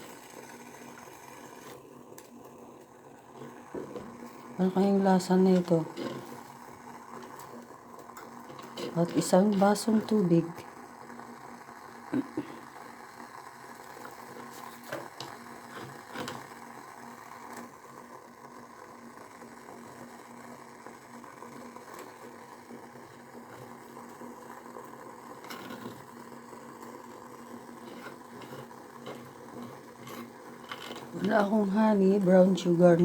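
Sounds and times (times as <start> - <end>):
steady low hum: 0.0 - 12.9.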